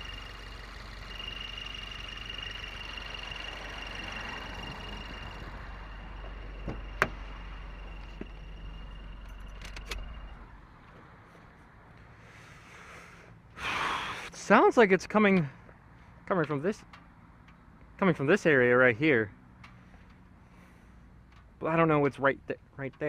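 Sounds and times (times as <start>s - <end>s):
high-pitched squeal: 0.0s - 10.6s
car engine running: 0.0s - 11.0s
sharp clicks and knocks: 16.4s - 18.1s.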